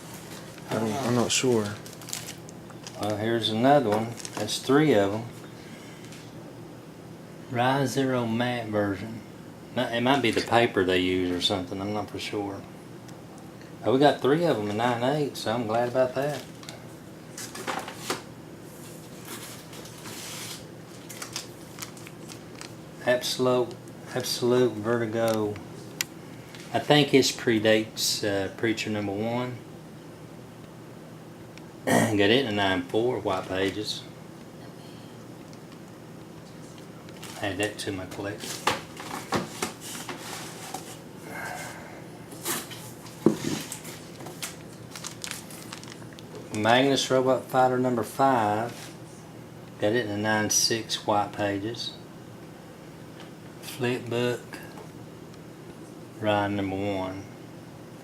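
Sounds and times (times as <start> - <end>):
packaging rustling: 0.1 - 3.2, 3.9 - 4.7, 18.8 - 22.8, 37.1 - 37.4, 42.4 - 46.7.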